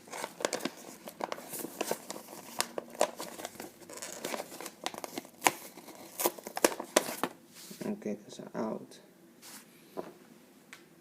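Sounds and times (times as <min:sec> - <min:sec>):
plastic packaging crinkling: 0:00.0 - 0:07.4.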